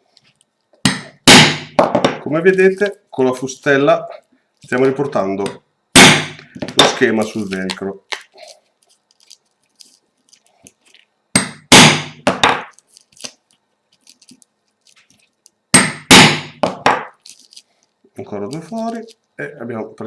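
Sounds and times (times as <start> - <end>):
hammer striking hole punch: 0.8 - 2.2, 6.0 - 7.0, 11.3 - 12.7, 15.7 - 17.1.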